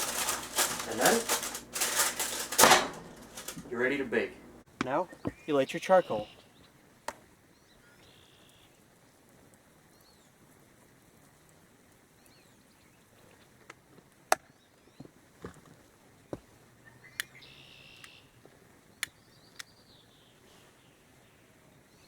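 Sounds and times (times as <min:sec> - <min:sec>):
charcoal clacking and knocking: 0:00.0 - 0:05.4
faint bird chirps: 0:05.0 - 0:06.7, 0:07.5 - 0:08.8.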